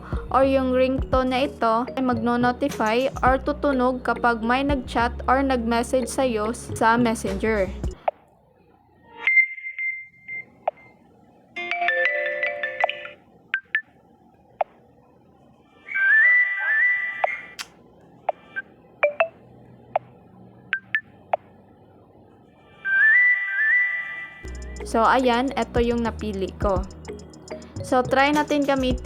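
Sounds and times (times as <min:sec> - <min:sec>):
rising stepped ringtone tune: 0:24.5 - 0:29.0.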